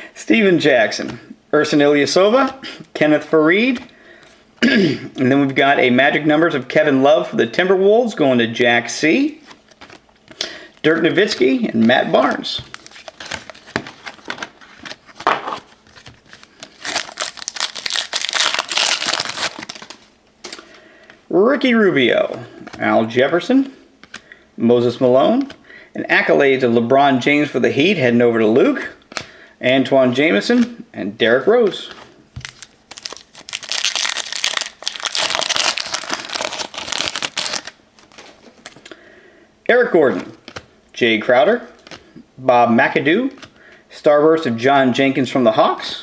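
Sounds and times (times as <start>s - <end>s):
wrapper tearing and crinkling: 12.7s - 20.1s, 32.4s - 38.9s.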